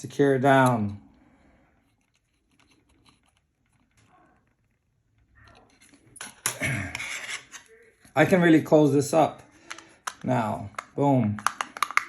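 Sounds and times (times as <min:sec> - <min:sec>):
rubbing and scraping handling noise: 0:00.0 - 0:12.0
small clicks and taps on plastic: 0:09.6 - 0:12.0.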